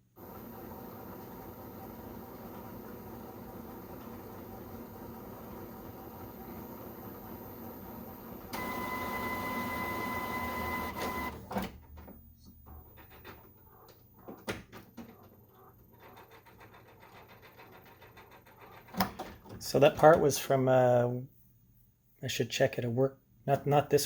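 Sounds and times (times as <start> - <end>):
printer motor whine: 0.2 - 16.6.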